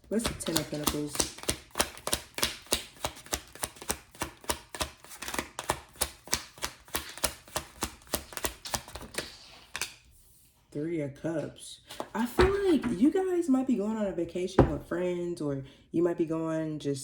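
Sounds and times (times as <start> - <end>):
cards being shuffled: 0.1 - 10.0.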